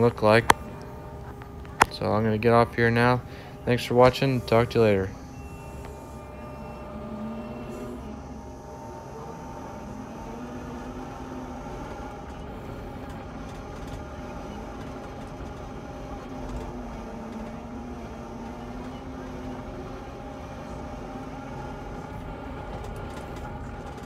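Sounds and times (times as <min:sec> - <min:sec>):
skid steer diesel engine running: 0:00.0 - 0:24.0.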